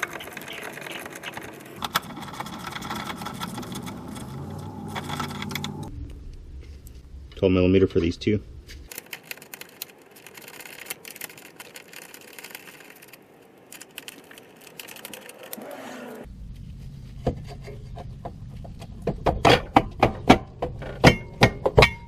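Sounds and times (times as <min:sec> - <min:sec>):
low steady rumble: 0:01.8 - 0:08.9, 0:16.2 - 0:21.5
metal parts knocking and clanking: 0:19.0 - 0:22.0.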